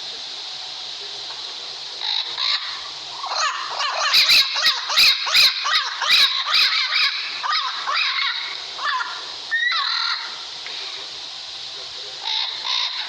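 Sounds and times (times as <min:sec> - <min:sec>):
parrot squawking: 0:02.0 - 0:10.4, 0:12.2 - 0:13.0.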